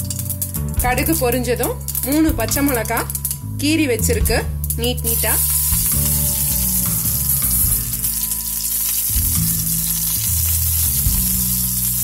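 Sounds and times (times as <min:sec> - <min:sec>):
background music with low notes: 0:00.0 - 0:12.0
seeds sizzling in hot oil: 0:00.0 - 0:12.0.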